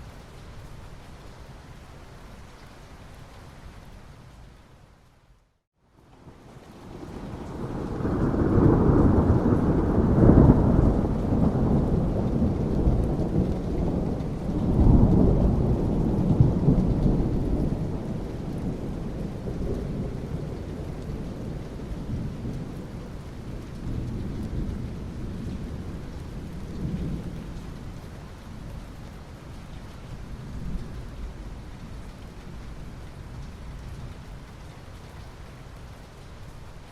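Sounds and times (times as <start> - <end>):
steady rain: 0.0 - 36.9
rolling thunder: 6.8 - 28.0.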